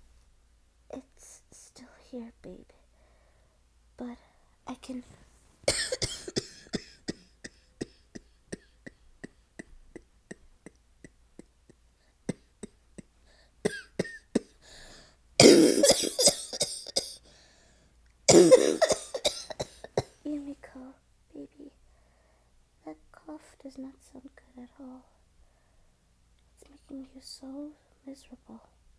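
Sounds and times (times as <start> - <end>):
woman coughing: 5.7 - 9.8, 13.6 - 14.6, 15.4 - 17.2, 18.3 - 20.2.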